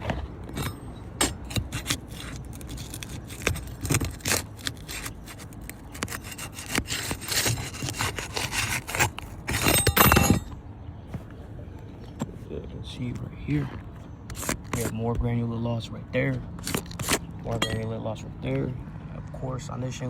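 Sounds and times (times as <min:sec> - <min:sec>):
tool scraping roof shingle: 0:00.0 - 0:10.6, 0:13.1 - 0:15.4, 0:16.3 - 0:18.1.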